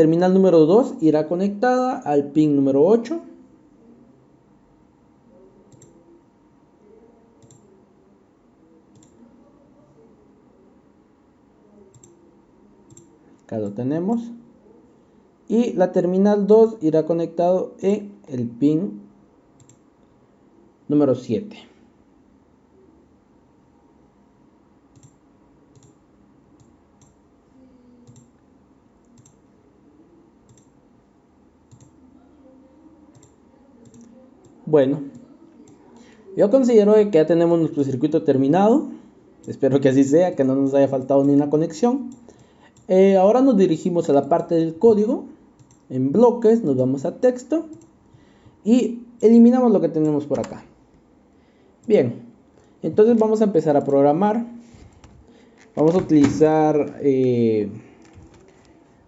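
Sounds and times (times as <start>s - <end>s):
computer mouse clicks: 5.7s - 6.0s, 7.4s - 7.7s, 8.9s - 9.2s, 11.9s - 12.2s, 12.9s - 14.2s, 19.6s - 19.8s, 24.9s - 26.0s, 26.6s - 27.2s, 28.0s - 28.4s, 29.0s - 29.4s, 30.4s - 30.8s, 31.7s - 32.0s, 33.1s - 35.8s, 45.6s - 45.9s, 47.7s - 48.0s
faint computer mouse clicks: 9.0s - 9.2s, 19.6s - 19.8s, 24.9s - 26.0s, 28.0s - 28.3s, 29.0s - 29.4s, 31.7s - 32.0s.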